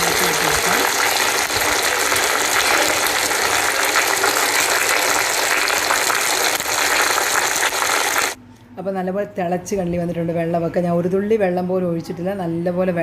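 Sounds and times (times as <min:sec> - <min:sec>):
chicken sizzling and bubbling: 0:00.0 - 0:08.4.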